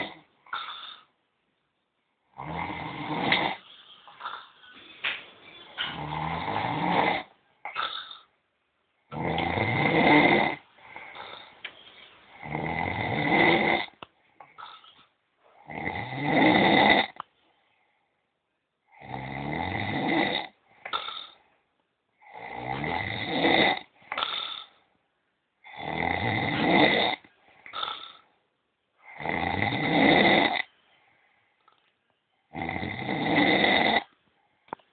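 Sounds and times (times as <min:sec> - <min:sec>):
man snoring loudly: 0:02.4 - 0:03.6, 0:06.0 - 0:07.3, 0:09.1 - 0:10.6, 0:12.4 - 0:13.9, 0:15.7 - 0:17.2, 0:19.0 - 0:20.6, 0:22.2 - 0:23.9, 0:25.6 - 0:27.2, 0:29.1 - 0:30.6, 0:32.5 - 0:34.1.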